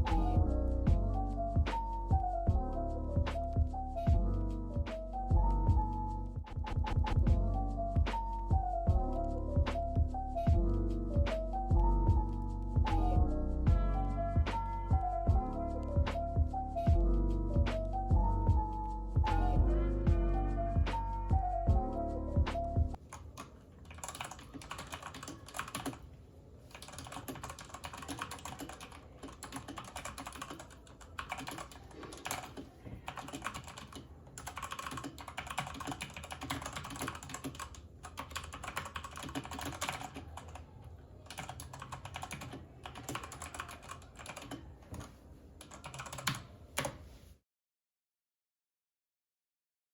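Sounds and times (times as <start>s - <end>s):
mechanical keyboard typing: 23.0s - 26.0s, 26.7s - 47.0s.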